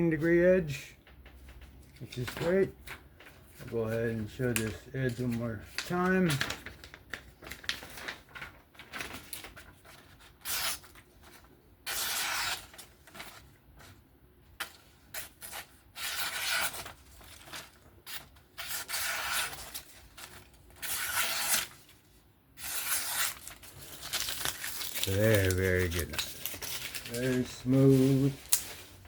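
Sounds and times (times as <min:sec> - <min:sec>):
blade slicing through paper: 0:11.9 - 0:13.4, 0:14.6 - 0:21.8, 0:22.6 - 0:28.6.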